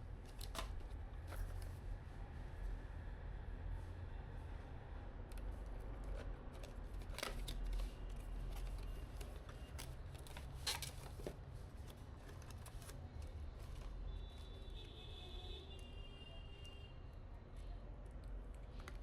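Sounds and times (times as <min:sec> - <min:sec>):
clicks and rustles of pc parts: 0:05.3 - 0:14.0.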